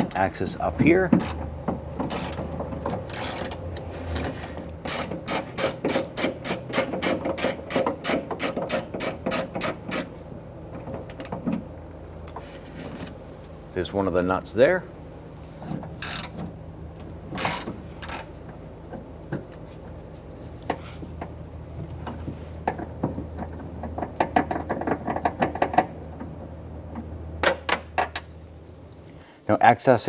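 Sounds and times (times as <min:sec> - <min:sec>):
steady low hum: 0:00.0 - 0:30.0
socket wrench ratchet clicking: 0:01.2 - 0:01.4, 0:02.0 - 0:03.6, 0:04.9 - 0:10.1, 0:16.0 - 0:16.3, 0:17.4 - 0:18.3.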